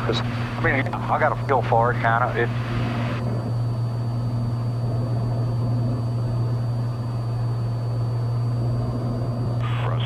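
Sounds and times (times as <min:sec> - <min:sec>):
light aircraft engine droning: 0:00.0 - 0:10.0.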